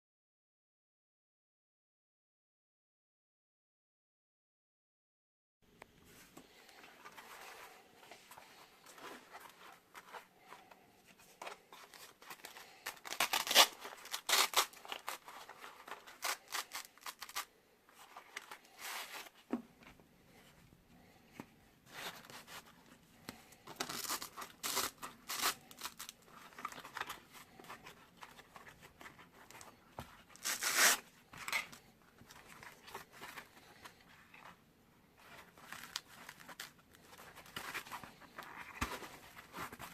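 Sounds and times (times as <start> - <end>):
holster rustling and scraping: 6.0 - 12.6, 35.2 - 39.9.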